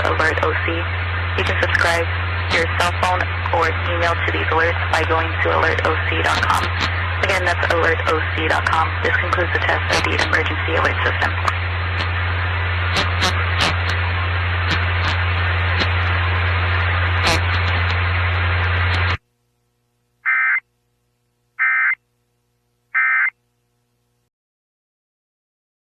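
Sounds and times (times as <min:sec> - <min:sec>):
radio static with hum: 0:00.0 - 0:19.3, 0:20.2 - 0:20.6
static crackles: 0:00.0 - 0:20.8
warbling alert data tones: 0:20.3 - 0:20.6, 0:23.0 - 0:23.3.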